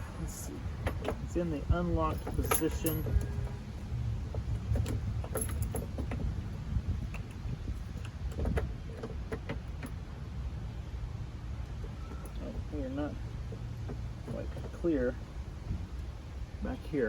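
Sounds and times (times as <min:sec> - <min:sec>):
steady low rumble: 0:00.0 - 0:17.0
metallic clicks and rattles: 0:02.1 - 0:03.6, 0:04.3 - 0:06.4.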